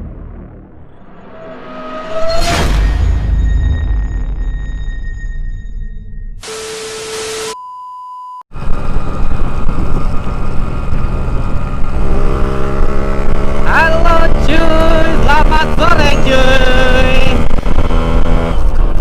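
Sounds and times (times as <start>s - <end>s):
steady beep: 3.2s - 8.4s
motorcycle engine revving: 8.6s - 19.0s
wind rumble on microphone: 8.6s - 19.0s.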